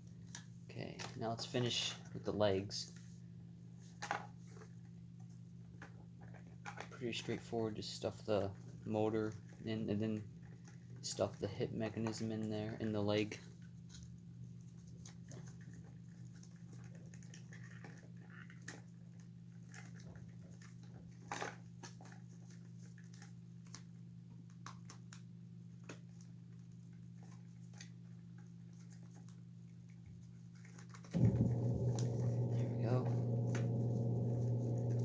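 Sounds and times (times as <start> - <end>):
steady low hum: 31.1 - 35.0.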